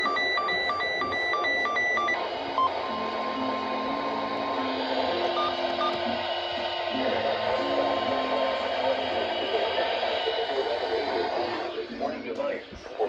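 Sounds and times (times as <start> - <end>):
two-pitch data beeps: 5.4 - 6.0.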